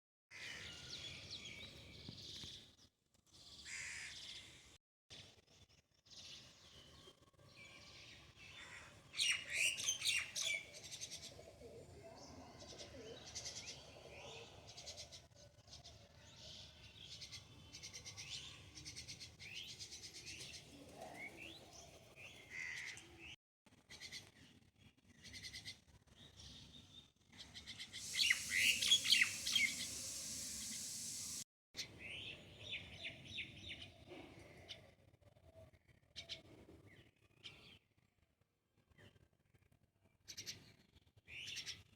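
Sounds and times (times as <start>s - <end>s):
small birds chirping: 27.4s - 31.4s.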